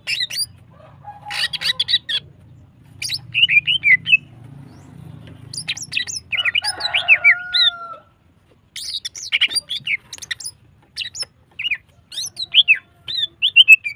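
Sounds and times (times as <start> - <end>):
bird chirping and whistling: 0.0 - 0.6, 3.0 - 4.9, 5.5 - 7.7, 8.8 - 13.9.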